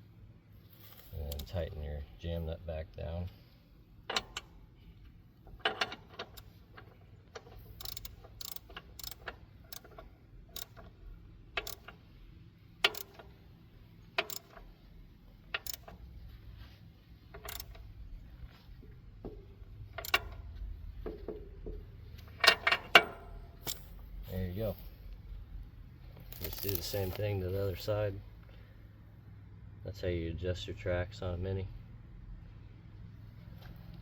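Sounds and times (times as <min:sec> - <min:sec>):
wrench clicking: 0:04.1 - 0:04.6, 0:05.5 - 0:11.0, 0:11.6 - 0:12.0, 0:12.8 - 0:13.4, 0:14.1 - 0:14.8, 0:15.4 - 0:16.1, 0:17.3 - 0:17.9, 0:19.9 - 0:20.5, 0:22.3 - 0:24.0.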